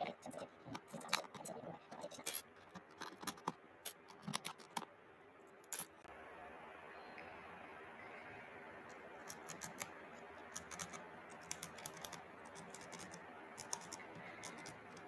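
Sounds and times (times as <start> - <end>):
keycaps clicking and clacking: 0.7 - 4.9, 9.3 - 9.9, 10.5 - 15.0.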